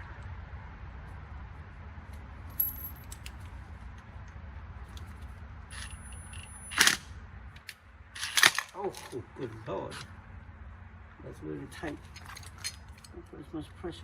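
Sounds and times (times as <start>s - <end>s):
hand tools clicking and clinking: 11.8s - 13.3s.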